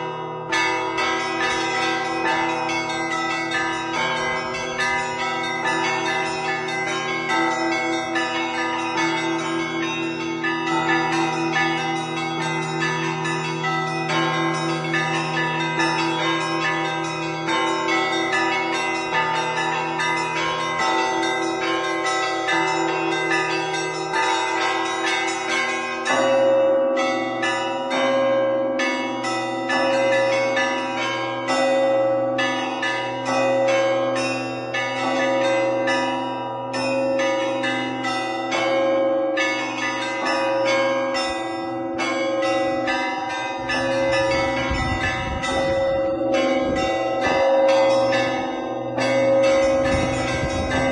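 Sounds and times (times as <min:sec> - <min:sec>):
large bells ringing: 0:00.0 - 0:50.9
small bells rapid chiming: 0:36.7 - 0:50.9
mid-pitched bell strikes: 0:49.2 - 0:50.9.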